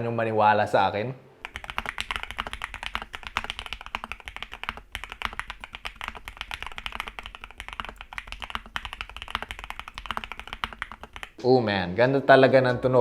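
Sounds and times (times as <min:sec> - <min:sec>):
mechanical keyboard typing: 0:01.4 - 0:11.4.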